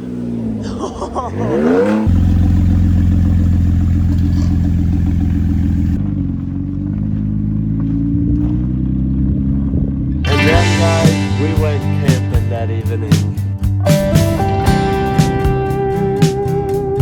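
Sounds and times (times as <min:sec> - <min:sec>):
small gasoline engine running: 0:01.4 - 0:06.5.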